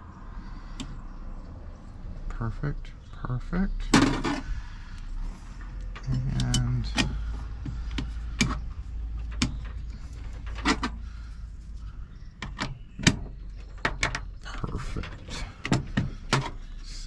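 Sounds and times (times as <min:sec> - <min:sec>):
lock parts clicking: 0:05.7 - 0:11.1, 0:12.2 - 0:16.8.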